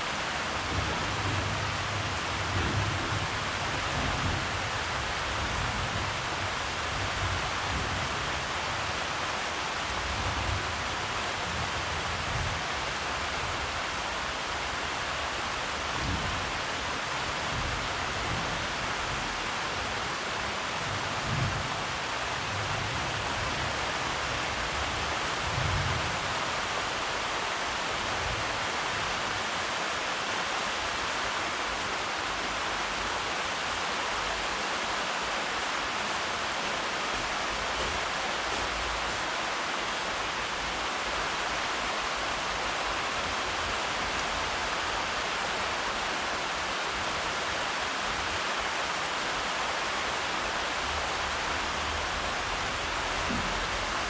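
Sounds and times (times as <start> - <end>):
steady rainfall: 0.0 - 54.0.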